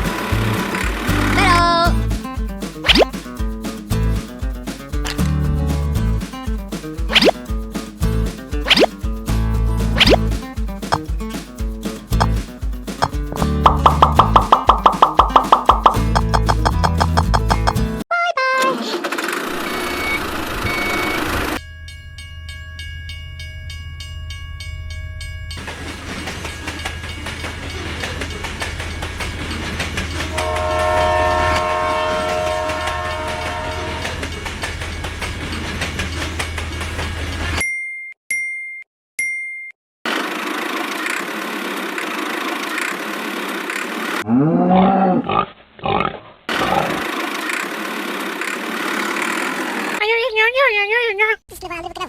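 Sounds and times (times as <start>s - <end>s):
train rumbling: 25.6s - 37.6s
train horn: 30.3s - 34.3s.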